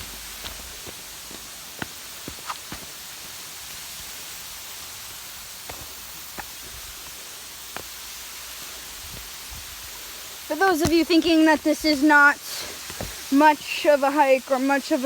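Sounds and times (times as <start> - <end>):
waterfall rushing: 7.3 - 15.0.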